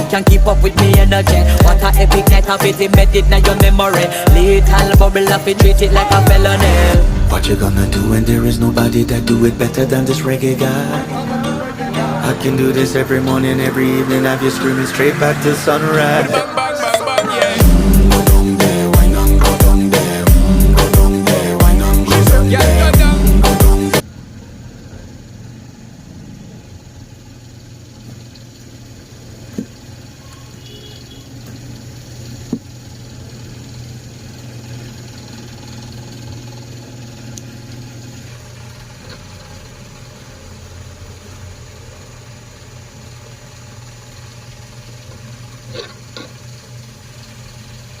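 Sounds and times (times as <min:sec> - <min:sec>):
low mechanical hum: 0:24.0 - 0:48.0.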